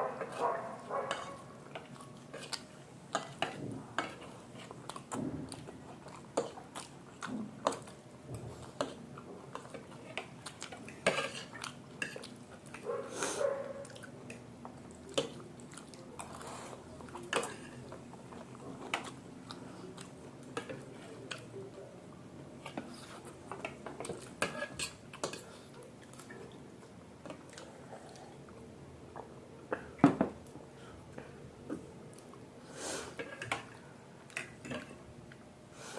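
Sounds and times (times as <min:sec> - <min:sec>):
chewing: 0:00.1 - 0:21.5, 0:22.6 - 0:28.7.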